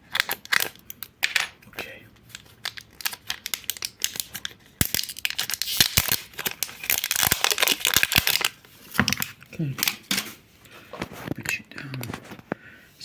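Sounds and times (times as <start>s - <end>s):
packaging tearing and crinkling: 0.1s - 1.1s, 2.2s - 10.2s.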